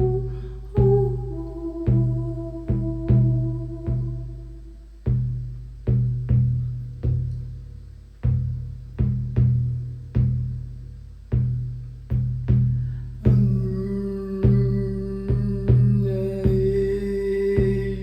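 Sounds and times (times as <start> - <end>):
steady higher tone: 0.0 - 4.9
hand drum booming: 0.0 - 18.0.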